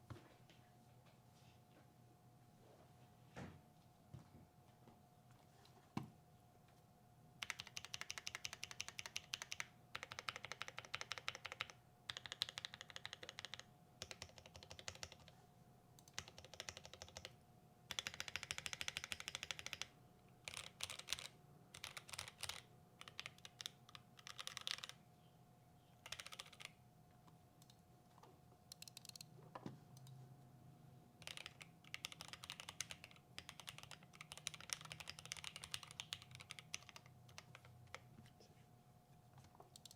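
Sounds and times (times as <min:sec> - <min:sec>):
fast typing on mechanical keyboard: 0:07.4 - 0:15.4, 0:16.0 - 0:25.0, 0:26.0 - 0:26.8, 0:31.2 - 0:38.1.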